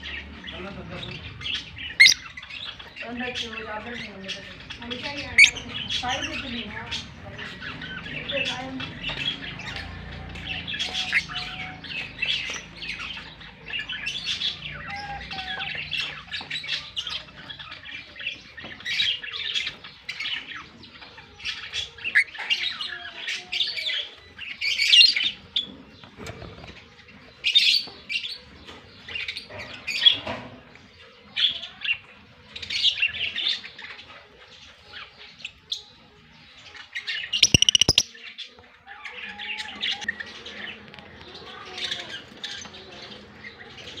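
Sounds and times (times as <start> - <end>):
lovebirds chirping: 0.0 - 9.9, 34.7 - 38.6.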